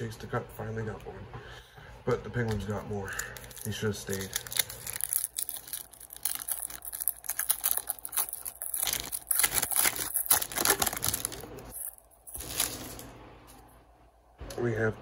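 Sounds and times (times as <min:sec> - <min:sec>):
card pack wrapper crinkling and tearing: 0:02.5 - 0:13.1.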